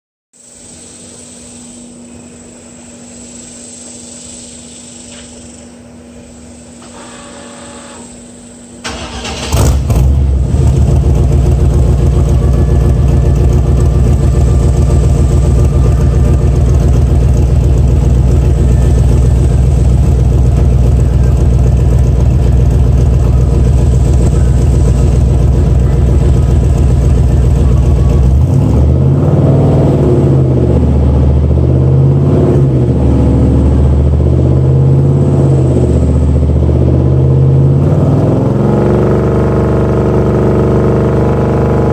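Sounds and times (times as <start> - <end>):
car engine idling loudly: 8.8 - 41.9
car engine revving: 8.8 - 41.9
car engine starting: 8.8 - 41.9.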